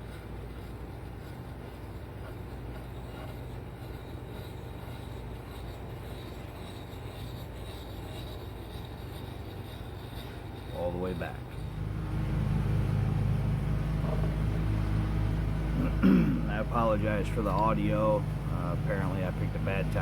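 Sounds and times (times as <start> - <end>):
sharpening stone rubbing axe: 0.0 - 11.8
lawn mower engine running: 11.6 - 20.0.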